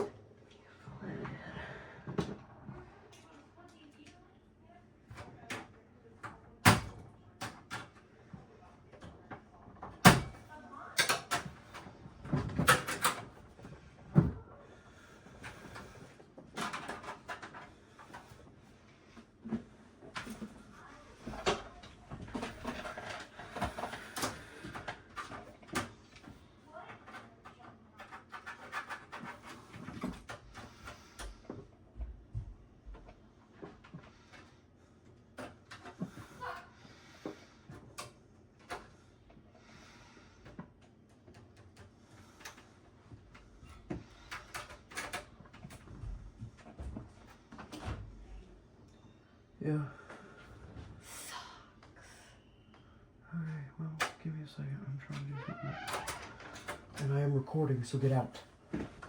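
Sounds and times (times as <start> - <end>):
rustling of parts: 14.9 - 31.7.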